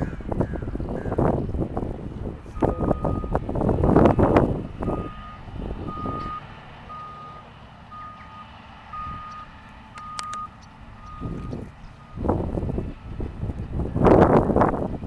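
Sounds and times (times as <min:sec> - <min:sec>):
low engine rumble: 0:00.0 - 0:15.0
reversing alarm beeping: 0:02.6 - 0:13.2.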